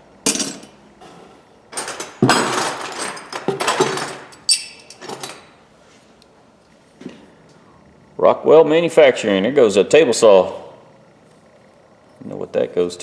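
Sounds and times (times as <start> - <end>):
wrenches clattering and clinking: 1.7 - 5.6.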